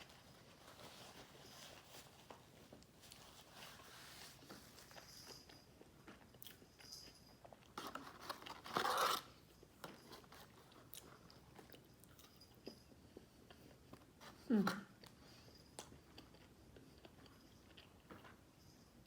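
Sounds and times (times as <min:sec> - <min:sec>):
person chewing food: 0:04.6 - 0:08.6, 0:09.5 - 0:14.4, 0:15.0 - 0:18.5.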